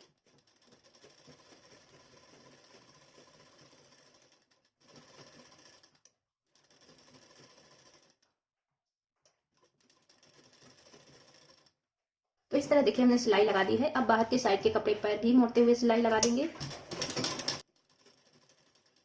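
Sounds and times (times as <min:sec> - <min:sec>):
sewing machine stitching: 0:00.0 - 0:08.3, 0:09.3 - 0:11.8, 0:16.2 - 0:19.0.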